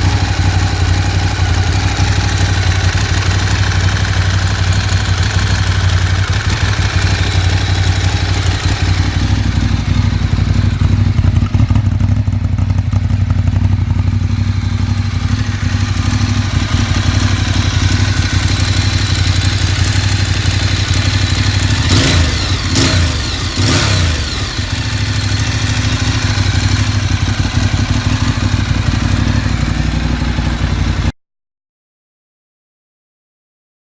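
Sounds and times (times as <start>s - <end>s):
motorcycle engine idling: 0.0s - 31.1s.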